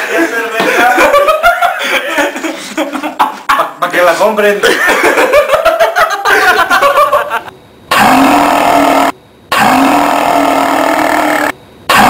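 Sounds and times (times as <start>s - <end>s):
man belching: 7.9s - 12.0s.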